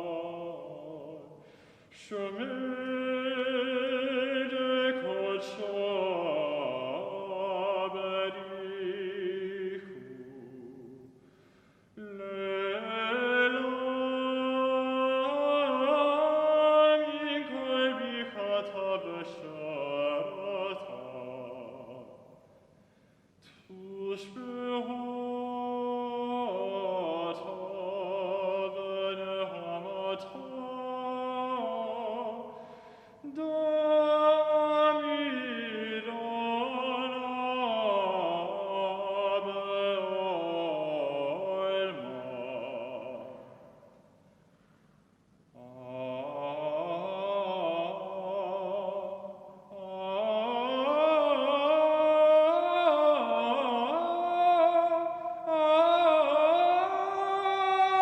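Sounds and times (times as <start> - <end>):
singer breathing: 1.4 - 2.0, 11.1 - 12.0, 22.6 - 23.4, 32.5 - 33.3, 44.2 - 45.2.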